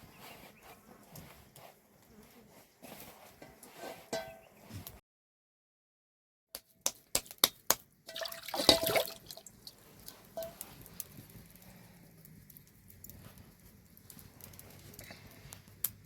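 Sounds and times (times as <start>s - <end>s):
water drops dripping: 7.4s - 10.6s
water splash: 8.1s - 9.6s.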